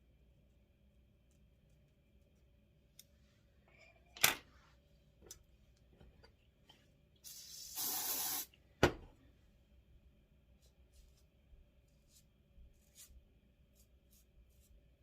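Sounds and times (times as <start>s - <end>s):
hair spray hissing: 7.2s - 8.6s.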